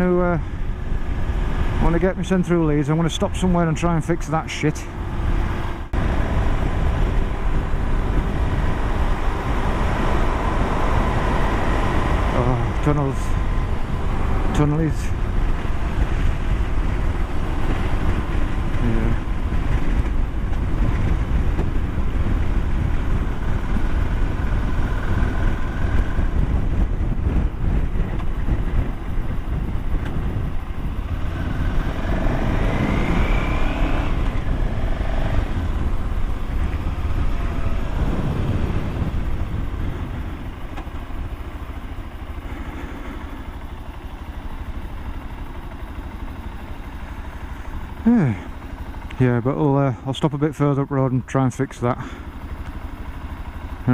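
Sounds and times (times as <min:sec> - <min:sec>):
wind noise: 0:00.0 - 0:41.4
motorcycle running: 0:00.0 - 0:53.9
road rumble: 0:00.0 - 0:53.9
rising whine: 0:31.1 - 0:40.9.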